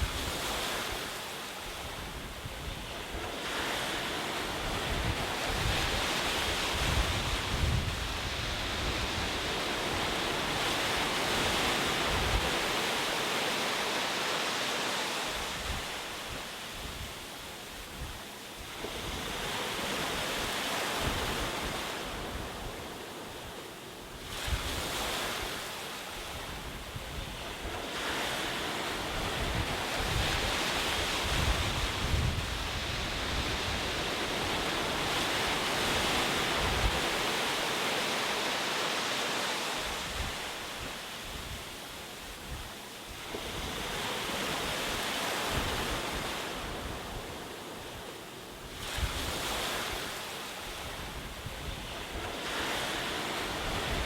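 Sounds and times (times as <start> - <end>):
ocean waves breaking on shore: 0.0 - 54.0.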